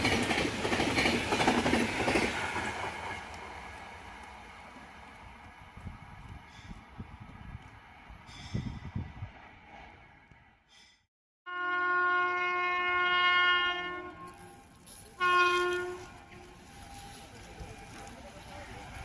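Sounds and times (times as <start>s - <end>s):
rush of passing train: 0.0s - 10.9s, 12.3s - 19.0s
locomotive horn blasts: 11.5s - 16.6s.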